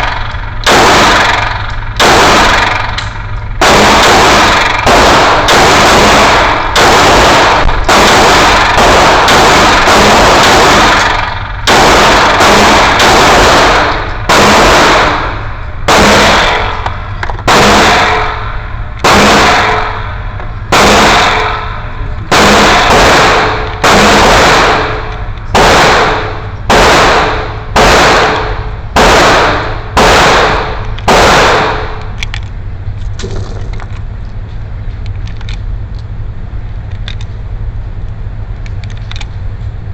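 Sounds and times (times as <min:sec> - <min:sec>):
pistol shots: 0:00.0 - 0:32.2.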